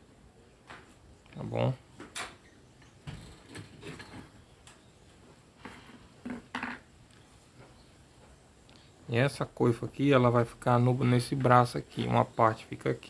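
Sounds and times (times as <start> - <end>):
metal parts knocking and clinking: 2.1 - 2.4.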